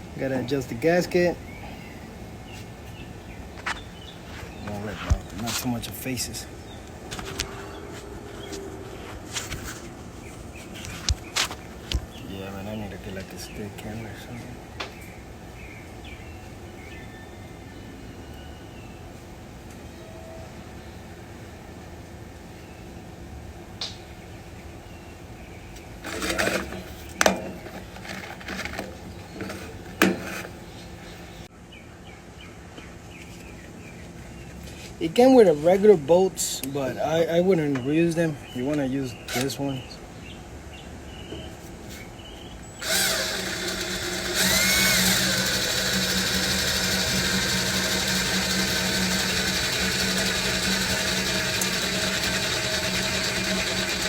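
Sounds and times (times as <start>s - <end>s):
electric power tool motor running: 26.0s - 26.9s, 42.8s - 54.0s.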